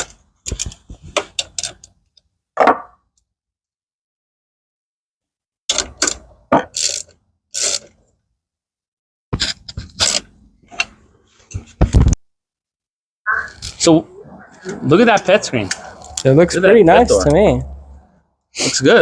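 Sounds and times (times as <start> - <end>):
ratchet-like clicking and rasping: 5.7 - 8.0.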